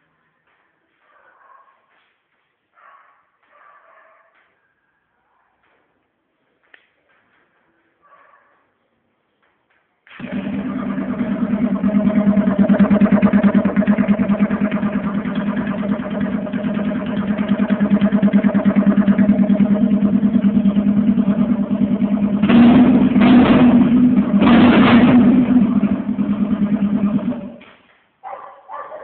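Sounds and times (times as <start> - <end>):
motorcycle engine idling and revving: 10.2 - 27.7.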